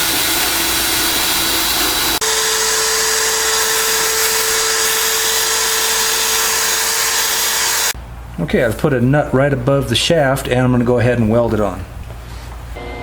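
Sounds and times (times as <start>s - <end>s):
electric drill whining: 0.0s - 8.0s.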